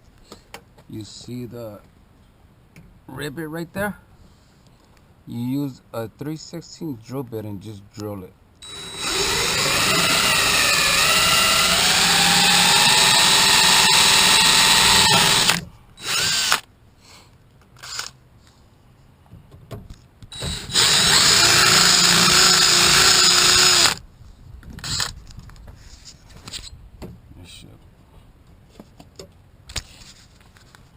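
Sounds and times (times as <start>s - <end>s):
electric drill drilling: 8.6s - 16.6s, 20.4s - 24.0s, 24.8s - 25.1s.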